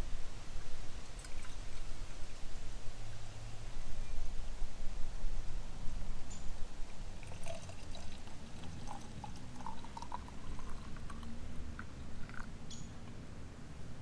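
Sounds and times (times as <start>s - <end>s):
liquid pouring into a cup: 1.1s - 1.9s, 6.9s - 12.5s.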